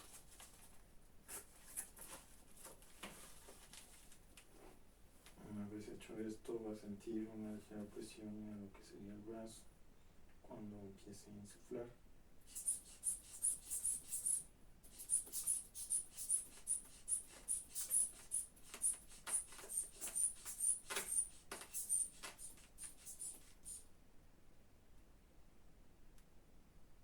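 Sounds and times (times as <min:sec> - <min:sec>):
air hissing and squeaking through valve: 0:12.5 - 0:23.9.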